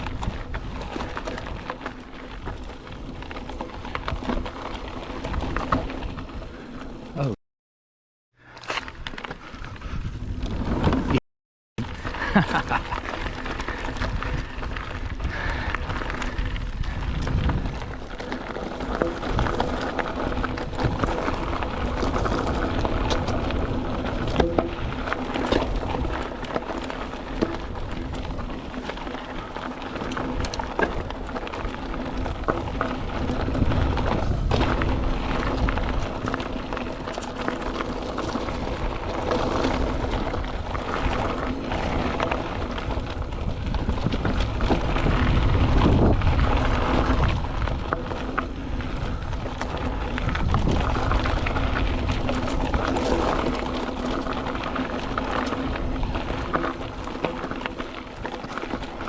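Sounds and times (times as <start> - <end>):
wind buffeting microphone: 0.0 - 6.7, 9.5 - 11.2, 11.9 - 59.0
tyres rolling on dirt: 0.0 - 7.4, 8.4 - 11.2, 11.8 - 59.0
bike knocks and rattles: 17.0 - 59.0.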